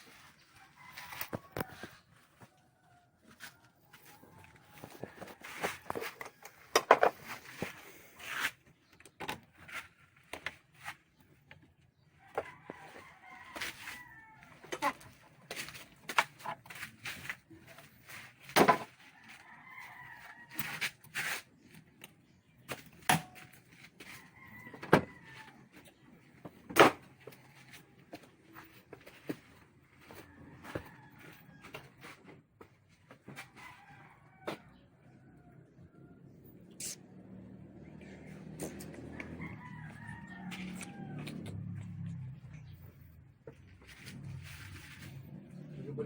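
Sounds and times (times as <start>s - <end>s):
rooster crowing: 0.6s - 2.0s, 12.3s - 15.0s, 30.0s - 31.8s, 38.4s - 42.5s.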